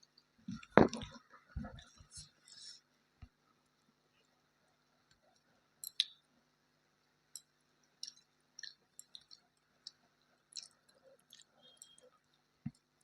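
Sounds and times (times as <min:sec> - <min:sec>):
person chewing food: 0:05.8 - 0:06.2, 0:07.4 - 0:13.0.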